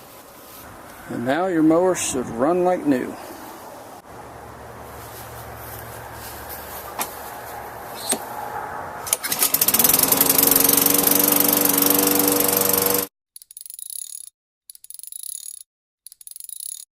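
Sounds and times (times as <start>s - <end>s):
lawn mower engine running: 4.0s - 13.1s.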